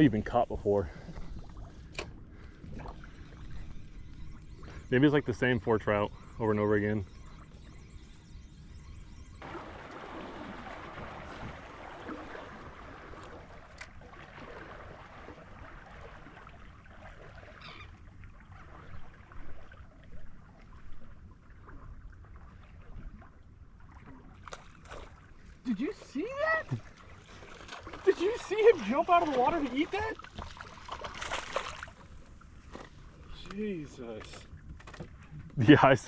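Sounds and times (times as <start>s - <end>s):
water lapping against boat hull: 0.0s - 8.0s, 9.4s - 36.0s.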